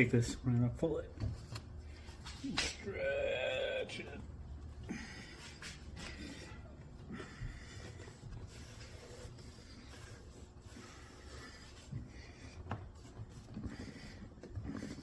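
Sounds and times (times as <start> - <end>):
leather rubbing and scraping: 5.2 - 15.0.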